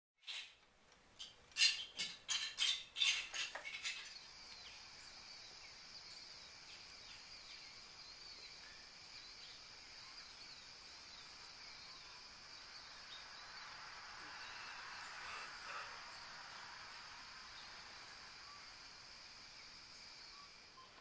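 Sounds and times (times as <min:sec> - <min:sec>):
insects chorus: 0:03.7 - 0:21.0
bird chirps: 0:19.5 - 0:21.0.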